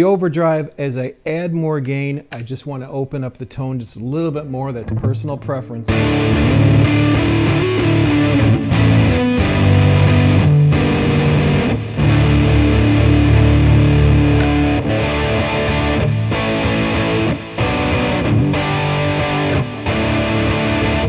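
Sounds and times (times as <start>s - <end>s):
distorted electric guitar chords: 5.9s - 21.0s.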